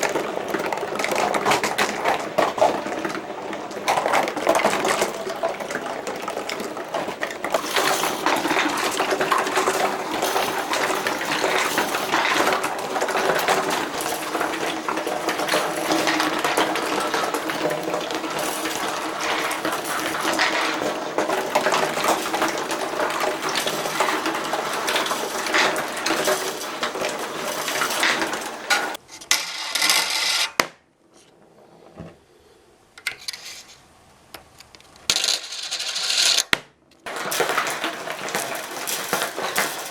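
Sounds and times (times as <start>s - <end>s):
glass marbles rattling on a track: 0.0s - 30.6s, 35.0s - 39.9s.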